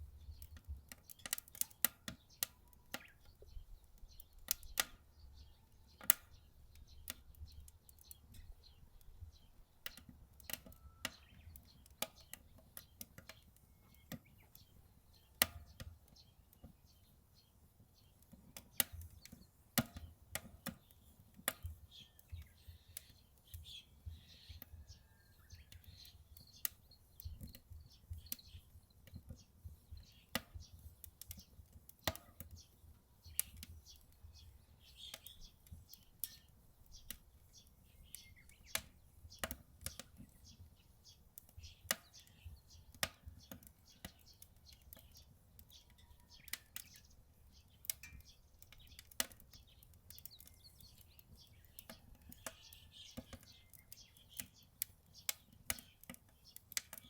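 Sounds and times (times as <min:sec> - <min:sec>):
faint bird chirps: 0:00.0 - 0:15.8, 0:21.8 - 0:30.8, 0:33.3 - 0:57.0
wood fire crackling: 0:00.0 - 0:57.0.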